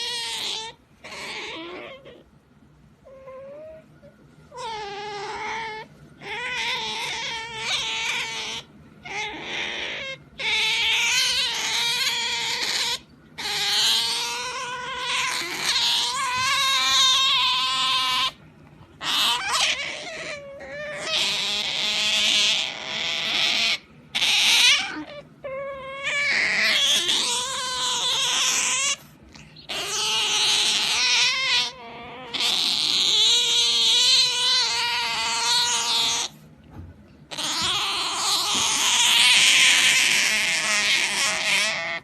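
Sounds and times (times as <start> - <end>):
otter whining squeals: 0.0 - 2.3, 4.5 - 18.4, 19.0 - 36.4.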